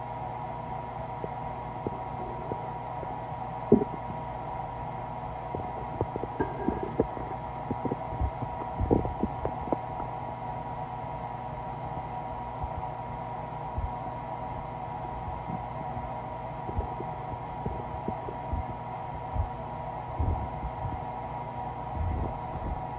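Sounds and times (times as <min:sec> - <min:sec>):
steady hum: 0:00.0 - 0:22.9
stomach growling: 0:01.8 - 0:04.4, 0:05.4 - 0:10.1, 0:16.6 - 0:18.8.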